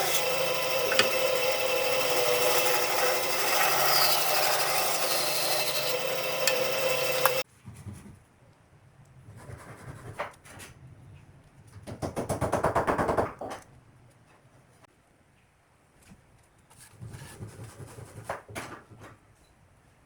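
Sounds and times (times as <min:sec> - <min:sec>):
loud rapid rattle: 0:00.0 - 0:07.4
power tool cutting wood: 0:00.0 - 0:07.4.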